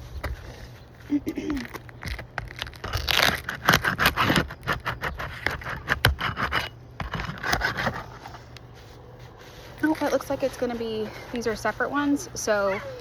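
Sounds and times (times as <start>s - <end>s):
roof shingles scraping and crackling: 1.6s - 8.5s.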